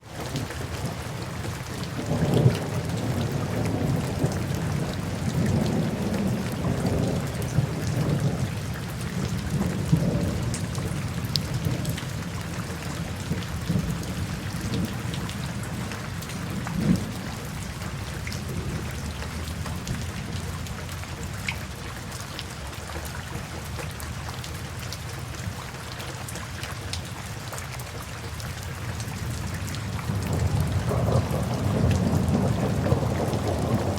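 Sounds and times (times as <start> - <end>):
steady rain falling: 0.0 - 33.9
low rolling thunder: 0.1 - 20.7, 29.0 - 33.9.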